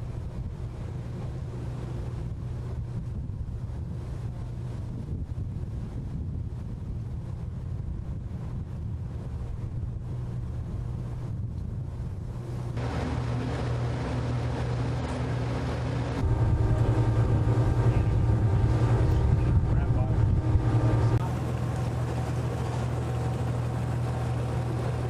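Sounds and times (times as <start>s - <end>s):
wind on microphone: 0.0s - 25.0s
motor humming: 10.1s - 25.0s.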